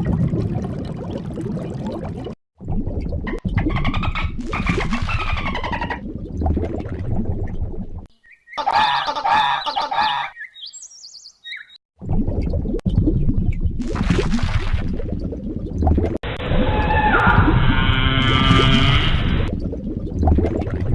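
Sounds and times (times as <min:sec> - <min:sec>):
animal calls: 0:08.6 - 0:10.4.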